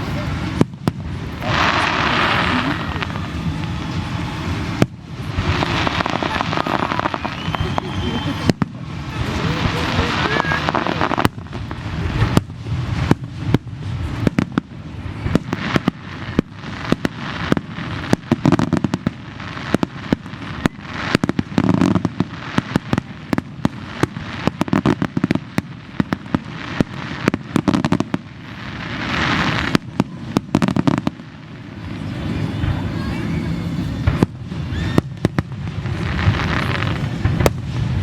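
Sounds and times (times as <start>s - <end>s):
deep fireworks booms: 0.0s - 38.0s
fireworks bangs and crackles: 0.0s - 38.0s.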